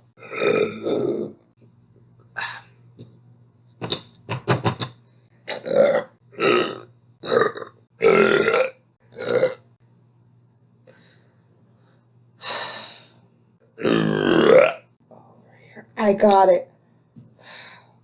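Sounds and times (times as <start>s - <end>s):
woman burping: 0.2s - 1.3s, 5.5s - 9.6s, 13.8s - 14.8s.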